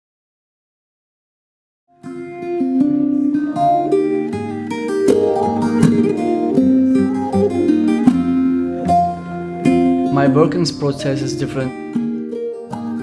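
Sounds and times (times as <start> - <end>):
plucked string instrument: 2.0 - 13.0.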